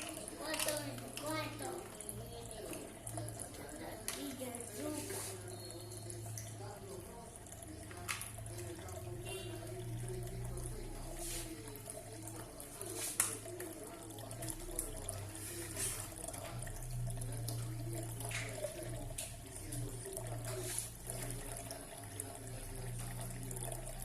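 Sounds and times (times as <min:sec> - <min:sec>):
low steady hum: 0:05.3 - 0:24.0.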